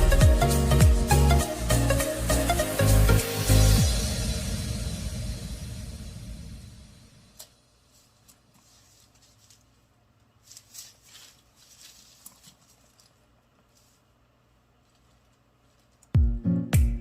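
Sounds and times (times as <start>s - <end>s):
background music: 0.0s - 7.3s, 16.2s - 17.0s
faint rustles: 7.8s - 16.1s.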